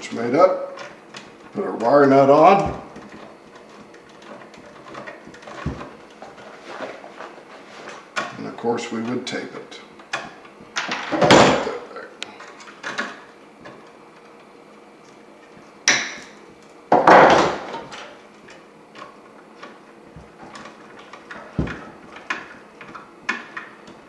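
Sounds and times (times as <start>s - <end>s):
handling clicks and knocks: 0.7s - 7.4s.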